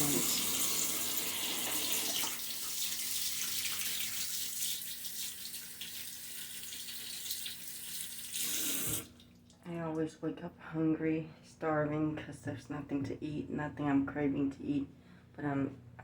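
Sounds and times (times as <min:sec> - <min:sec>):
faucet running into sink: 0:00.0 - 0:09.5.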